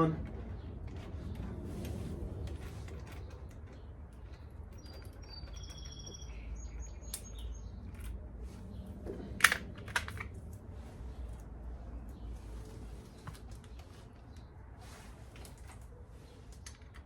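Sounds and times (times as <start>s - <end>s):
bird chirps: 3.7s - 7.9s.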